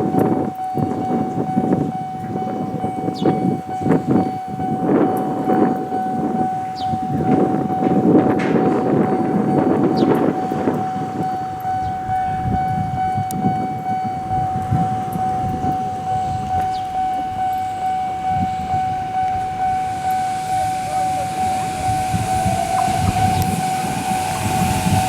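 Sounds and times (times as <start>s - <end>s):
train wheels clattering over rail joints: 3.2s - 25.0s
high-pitched electric whine: 9.3s - 25.0s.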